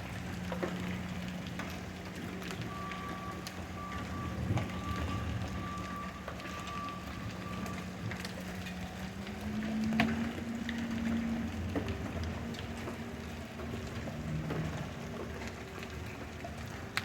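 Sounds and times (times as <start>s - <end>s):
vehicle engine humming: 0.0s - 17.0s
reversing beeper: 2.6s - 8.1s.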